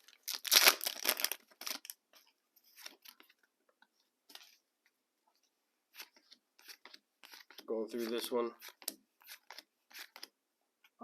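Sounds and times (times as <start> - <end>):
trading cards rustling and clicking: 6.0 - 10.3.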